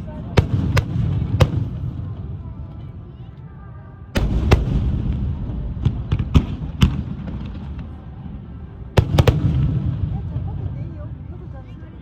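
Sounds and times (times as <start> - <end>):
fireworks booming: 4.2 - 8.0.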